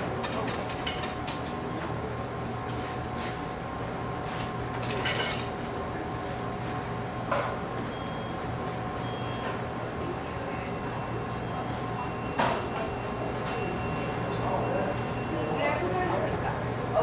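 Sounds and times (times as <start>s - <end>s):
dishes and utensils clattering: 0.2s - 1.6s, 4.8s - 5.6s.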